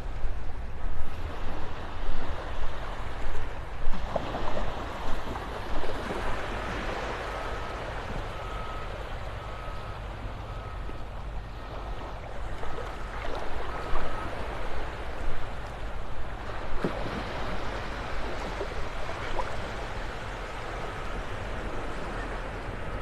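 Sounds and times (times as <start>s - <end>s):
surf washing on shore: 0.0s - 23.0s
vehicle reversing beeper: 6.1s - 15.6s, 17.0s - 23.0s.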